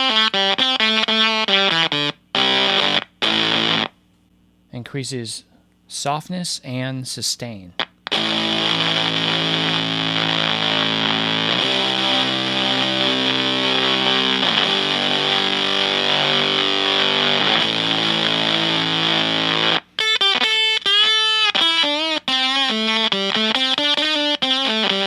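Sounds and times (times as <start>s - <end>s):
choppy guitar notes with bends: 0.0s - 3.9s, 7.8s - 25.0s
fuzzy electric guitar chords: 0.0s - 4.0s, 7.8s - 25.0s.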